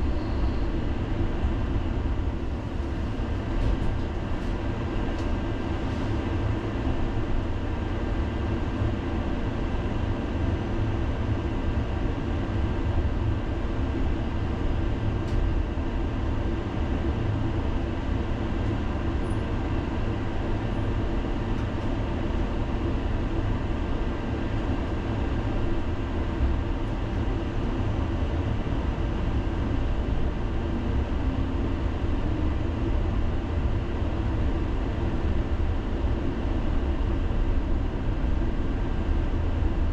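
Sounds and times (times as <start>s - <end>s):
tram running on rails: 0.0s - 10.2s.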